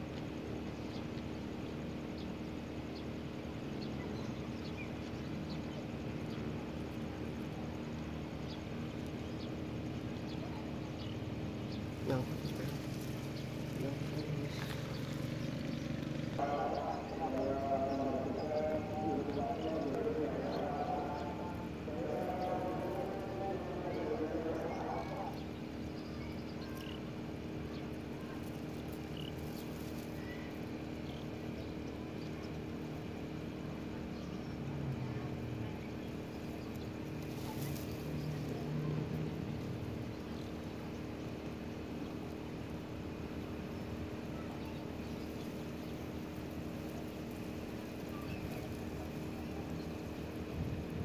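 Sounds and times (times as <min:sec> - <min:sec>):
low mechanical hum: 0:00.0 - 0:51.0
rustle: 0:08.9 - 0:16.4, 0:27.7 - 0:31.3, 0:35.0 - 0:51.0.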